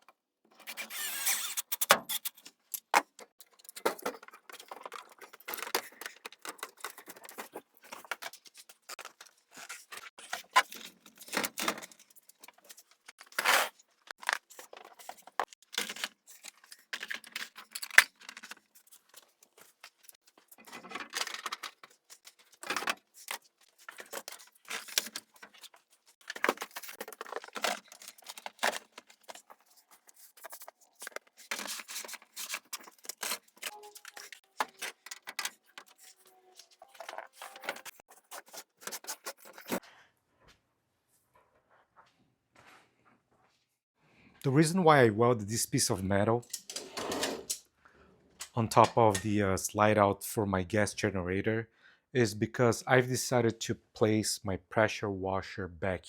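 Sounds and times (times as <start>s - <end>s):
tools and metal parts clinking: 0.5s - 13.4s, 14.0s - 39.8s.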